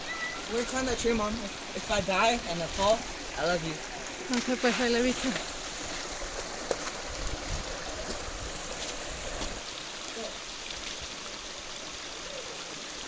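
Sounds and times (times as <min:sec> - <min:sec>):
stream water flowing: 0:00.0 - 0:13.0.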